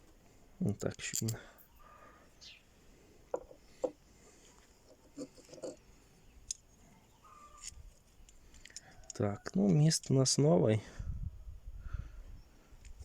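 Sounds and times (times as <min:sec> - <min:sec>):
small metal parts clicking: 0:00.7 - 0:01.7, 0:07.6 - 0:09.2.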